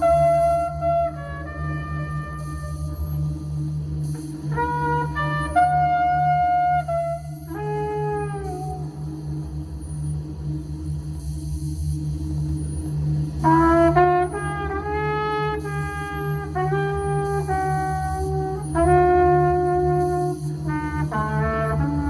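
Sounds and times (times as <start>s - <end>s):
trumpet playing held notes: 0.0s - 3.4s, 4.2s - 9.3s, 13.4s - 22.0s
low electronic drone: 0.0s - 22.0s.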